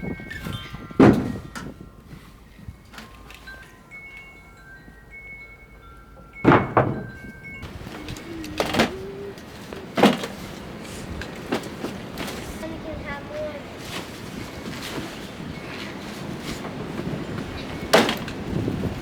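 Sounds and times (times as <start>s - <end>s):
wind chimes ringing: 0.0s - 9.4s, 15.3s - 19.0s
loud knocks: 0.9s - 1.7s, 6.4s - 7.3s.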